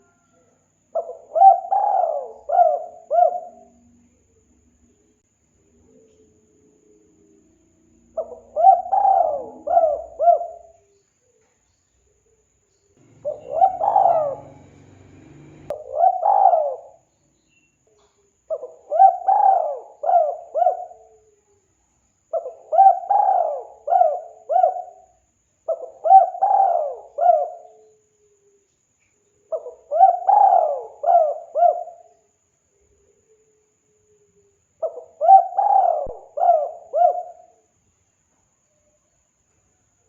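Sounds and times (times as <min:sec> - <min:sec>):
dove cooing: 0:01.0 - 0:03.9, 0:08.1 - 0:10.9, 0:13.0 - 0:17.0, 0:18.5 - 0:21.3, 0:22.3 - 0:25.1, 0:25.7 - 0:27.9, 0:29.5 - 0:32.1, 0:34.8 - 0:37.6
faint low rumble: 0:13.0 - 0:15.8.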